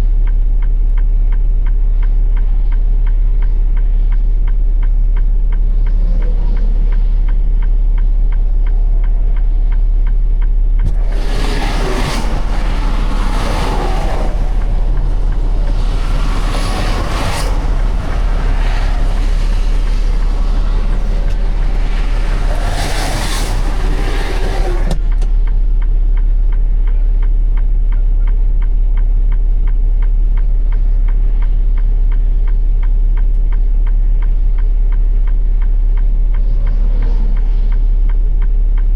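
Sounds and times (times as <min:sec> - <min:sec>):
loud rushing noise: 0:10.8 - 0:25.5
diesel engine idling: 0:10.8 - 0:26.1.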